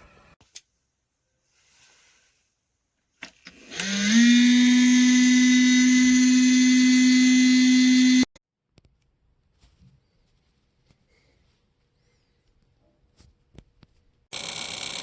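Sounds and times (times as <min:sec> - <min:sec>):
heater fan motor buzzing: 0:03.6 - 0:08.3.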